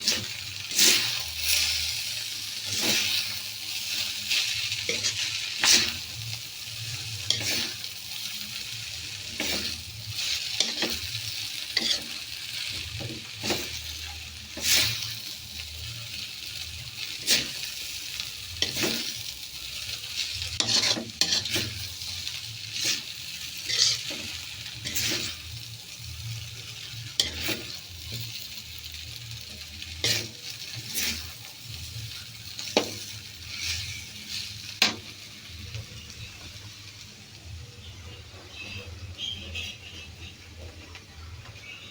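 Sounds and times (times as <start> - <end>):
noodles sizzling in a pan: 0.0 - 41.9
utensil scraping a pan: 7.2 - 7.8, 11.8 - 12.2, 14.5 - 15.1, 18.6 - 19.2, 20.5 - 22.0, 22.7 - 25.4, 30.0 - 31.4, 32.6 - 35.0.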